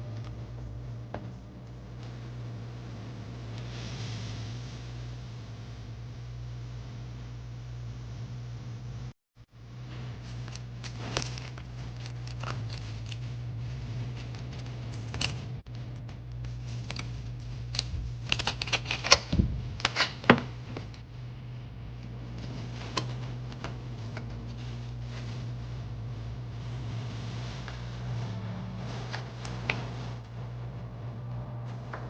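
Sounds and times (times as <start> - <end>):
steady low hum: 0.0 - 32.0
clicks and crackles of handling: 10.2 - 21.0, 22.0 - 25.5.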